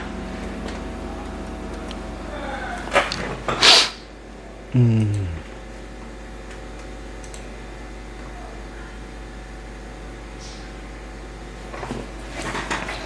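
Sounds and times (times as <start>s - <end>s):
low electrical hum: 0.0s - 13.0s
man's short low voice: 4.7s - 5.5s.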